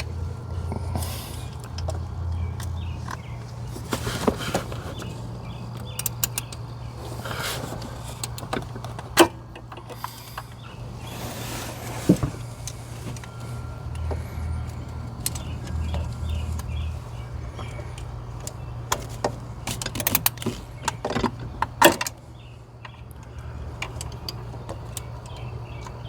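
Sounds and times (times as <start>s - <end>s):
rustling: 2.9s - 5.8s.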